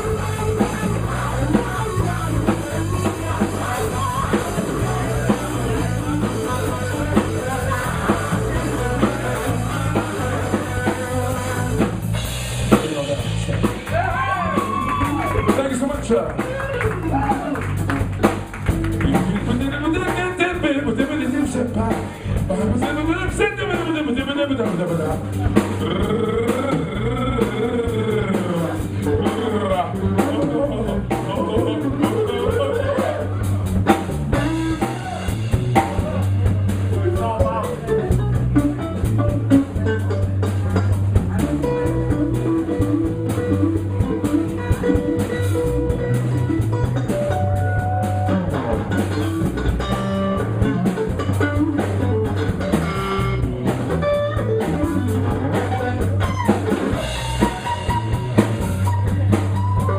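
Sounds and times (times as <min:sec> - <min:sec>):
blues-rock band playing: 0:00.0 - 0:59.9
lead guitar solo: 0:13.7 - 0:19.3, 0:37.4 - 0:59.9.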